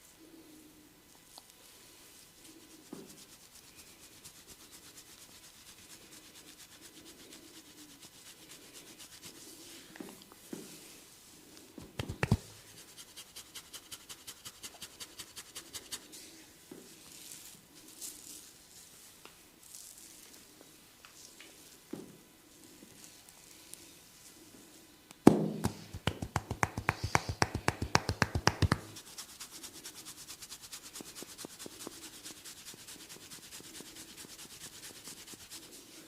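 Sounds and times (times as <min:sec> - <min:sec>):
hands rubbing scalp and hair: 0:01.9 - 0:11.0, 0:11.8 - 0:20.4, 0:25.5 - 0:36.0
sharp smacks: 0:11.8 - 0:12.5, 0:25.3 - 0:28.9.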